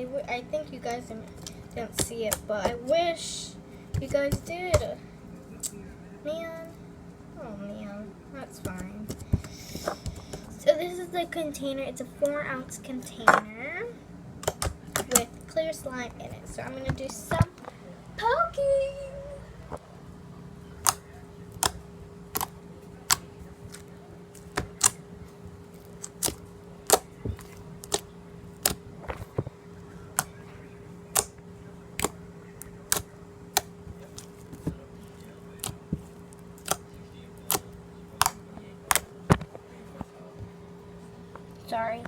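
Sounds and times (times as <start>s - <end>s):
steady low hum: 0.0s - 42.0s
finger poking slime with pops: 24.4s - 25.0s, 31.1s - 31.3s, 32.0s - 32.2s.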